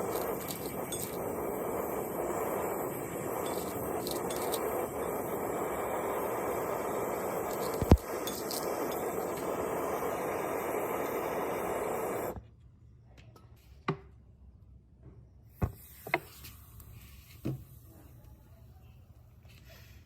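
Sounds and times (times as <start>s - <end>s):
loud steady hiss: 0.0s - 12.4s.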